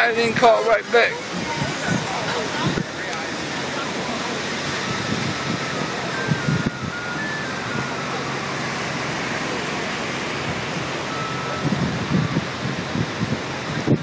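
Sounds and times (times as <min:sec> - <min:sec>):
faint tune of high notes: 0:00.0 - 0:13.2
rushing outdoor noise: 0:00.0 - 0:14.0.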